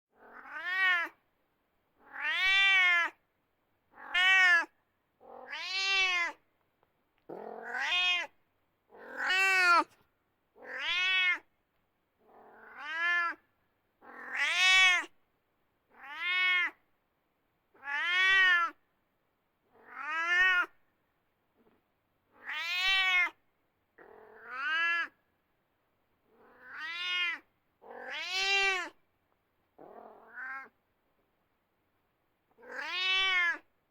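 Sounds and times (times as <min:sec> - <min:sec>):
cat meowing: 0:00.2 - 0:01.2, 0:02.0 - 0:03.2, 0:03.9 - 0:06.4, 0:07.3 - 0:09.9, 0:10.6 - 0:11.5, 0:12.5 - 0:13.4, 0:14.0 - 0:15.2, 0:15.9 - 0:16.8, 0:17.8 - 0:18.8, 0:19.8 - 0:20.8, 0:22.4 - 0:23.4, 0:24.0 - 0:25.2, 0:26.4 - 0:29.0, 0:29.8 - 0:30.8, 0:32.6 - 0:33.7.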